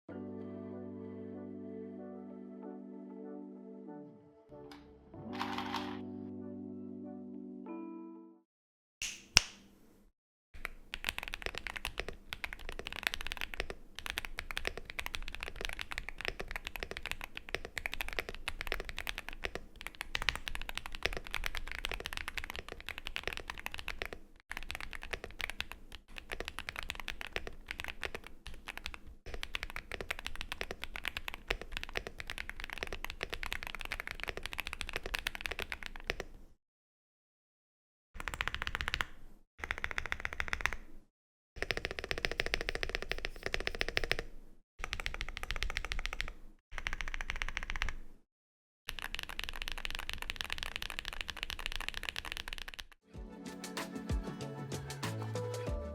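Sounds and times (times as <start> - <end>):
typing on mechanical keyboard: 5.3 - 6.0, 10.6 - 36.4, 38.2 - 40.9, 41.6 - 48.1, 48.9 - 53.0
sharp click: 9.0 - 9.7.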